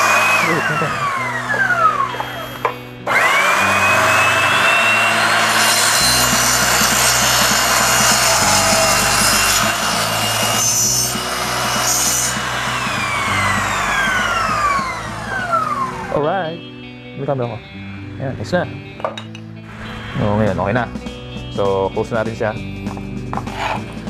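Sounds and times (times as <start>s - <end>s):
miter saw motor whining: 0.0s - 16.2s.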